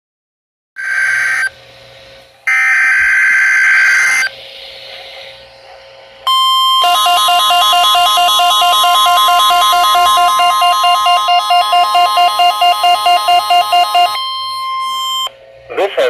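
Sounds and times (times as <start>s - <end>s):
screechy digital data tones: 0.8s - 1.5s, 2.5s - 4.4s, 6.3s - 15.3s
warbling beeps: 2.5s - 4.4s, 6.3s - 15.4s
steady alert tone: 6.3s - 15.3s.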